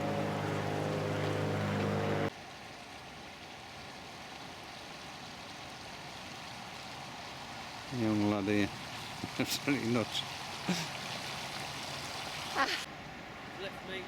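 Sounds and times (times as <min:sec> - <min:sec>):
engine humming: 0:00.0 - 0:02.3
floodwater rushing: 0:00.0 - 0:14.0.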